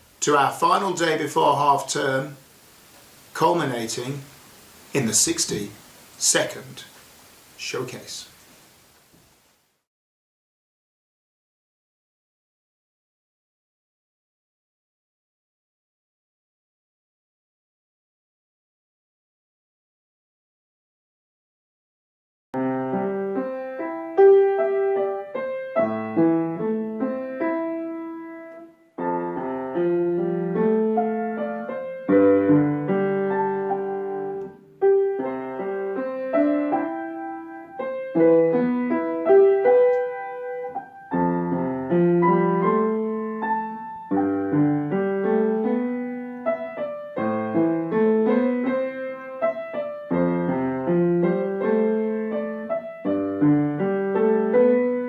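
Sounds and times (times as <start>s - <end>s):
solo piano piece: 22.6s - 55.0s.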